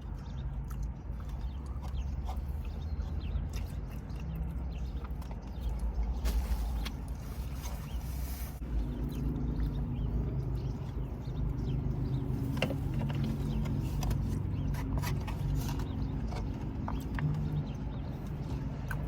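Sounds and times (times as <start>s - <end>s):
small wet clicks: 0.0s - 7.2s
chewing and mouth smacking: 0.0s - 19.0s.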